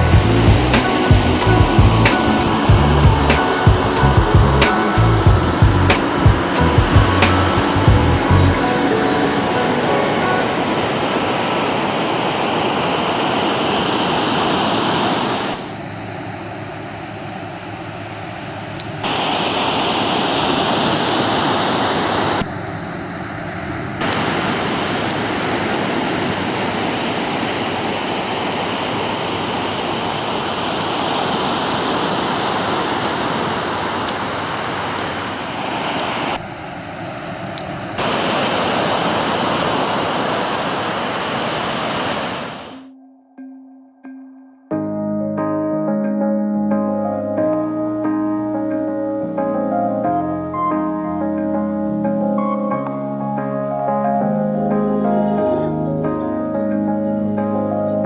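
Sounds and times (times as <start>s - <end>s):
ocean surf breaking on beach: 0.2s - 42.8s.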